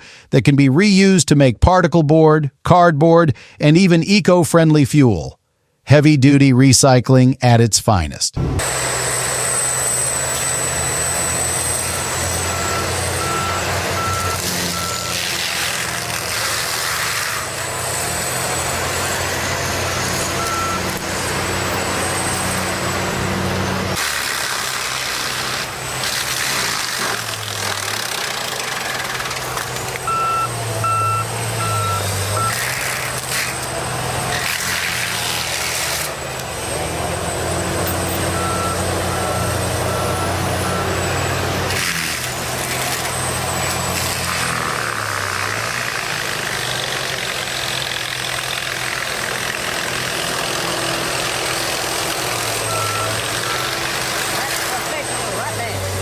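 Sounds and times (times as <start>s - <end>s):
heavy machinery engines: 8.4s - 56.0s
reversing alarm beeping: 8.6s - 15.3s, 17.2s - 23.8s, 30.0s - 33.7s, 36.5s - 44.0s, 52.5s - 56.0s.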